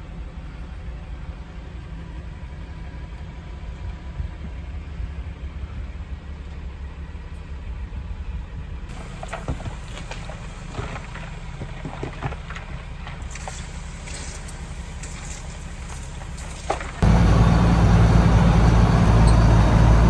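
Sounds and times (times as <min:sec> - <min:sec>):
machine engine rumbling: 0:08.9 - 0:20.0
rattling and scraping: 0:08.9 - 0:20.0.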